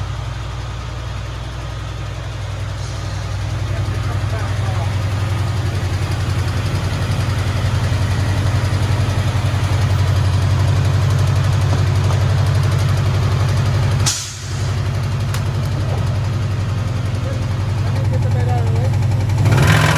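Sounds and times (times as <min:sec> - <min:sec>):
vehicle engine running: 0:00.0 - 0:19.9
short sharp noise: 0:14.0 - 0:14.8.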